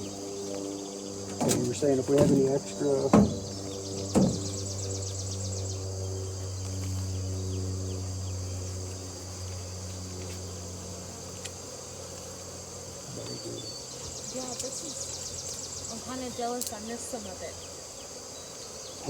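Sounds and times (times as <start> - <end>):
high pulsing insect trill: 0.0 - 19.0
low buzzing hum: 0.0 - 19.0
knock: 3.1 - 3.5, 4.1 - 4.6.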